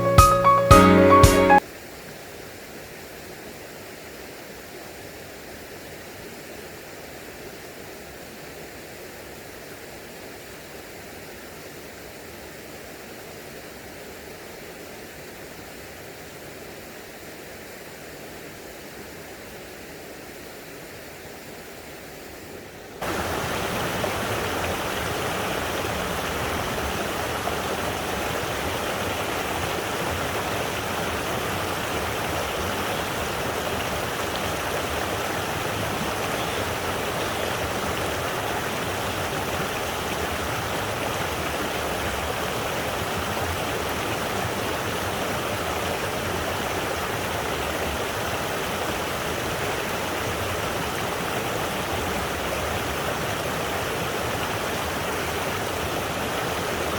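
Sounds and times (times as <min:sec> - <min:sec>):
waterfall rushing: 0:00.0 - 0:01.6, 0:23.0 - 0:56.9.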